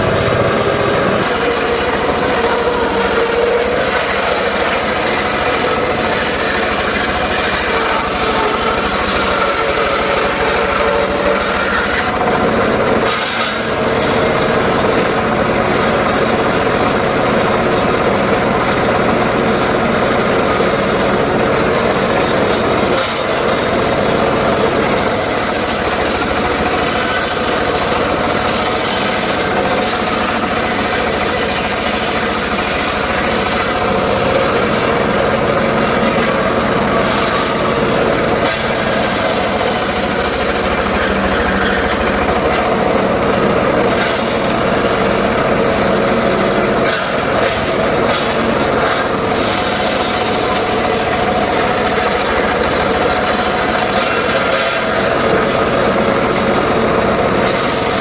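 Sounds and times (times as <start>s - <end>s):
circular saw cutting wood: 0.0s - 58.0s.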